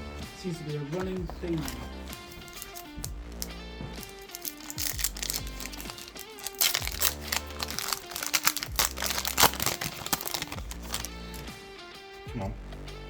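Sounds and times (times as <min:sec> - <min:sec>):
background music: 0:00.0 - 0:13.0
wrapper crinkling: 0:01.6 - 0:11.5.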